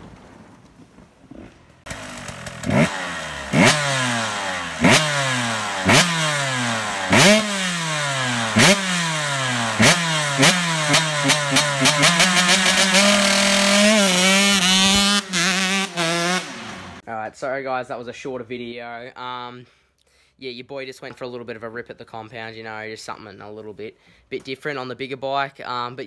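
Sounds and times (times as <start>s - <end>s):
two-stroke engine throttle blips: 1.4s - 17.0s.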